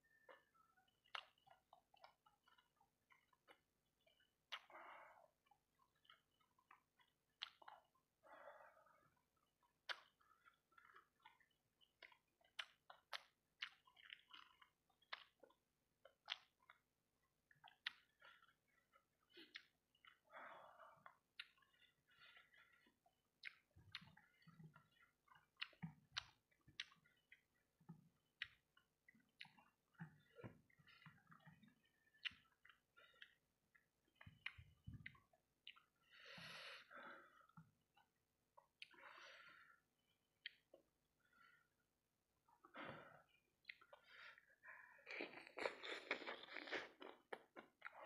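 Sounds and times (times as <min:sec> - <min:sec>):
person chewing food: 0:00.0 - 0:48.0
wet mouth clicks and lip smacks: 0:01.0 - 0:03.6, 0:04.5 - 0:04.8, 0:05.9 - 0:07.9, 0:09.8 - 0:16.8, 0:17.6 - 0:18.3, 0:19.4 - 0:20.2, 0:21.0 - 0:21.8, 0:23.4 - 0:36.0, 0:40.4 - 0:40.8, 0:43.6 - 0:44.0
person breathing: 0:36.0 - 0:37.6, 0:38.9 - 0:39.9, 0:43.9 - 0:45.2.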